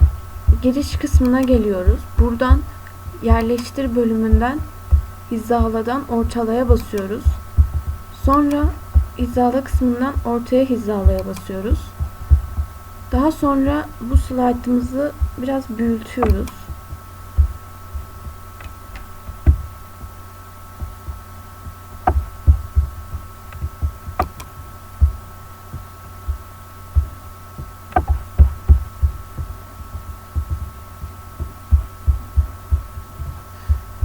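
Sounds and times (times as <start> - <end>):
steady electrical hum: 0.0 - 34.0
computer mouse clicks: 1.0 - 4.0, 16.1 - 17.5, 21.9 - 22.6, 23.5 - 24.6, 27.6 - 32.6
low thumps of desk bumps: 7.3 - 9.9, 12.0 - 14.3, 16.2 - 34.0.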